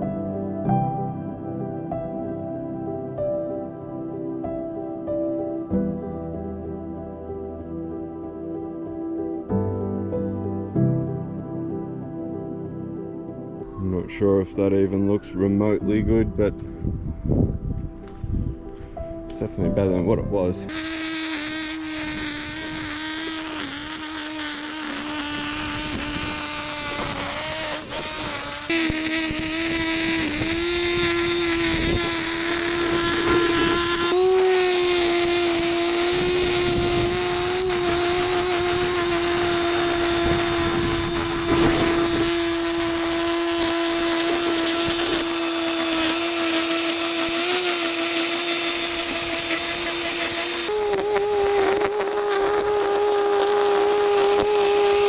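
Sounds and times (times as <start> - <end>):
string trimmer whining: 20.7 - 55.0.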